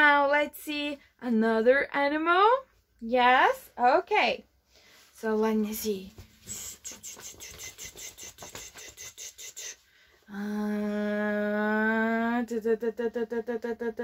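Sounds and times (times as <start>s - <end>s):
woman humming a long note: 10.3s - 14.0s.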